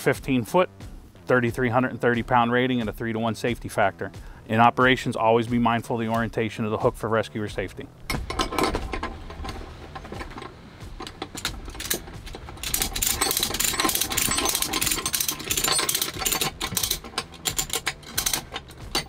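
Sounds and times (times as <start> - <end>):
ratchet strap clicking: 8.1 - 19.0.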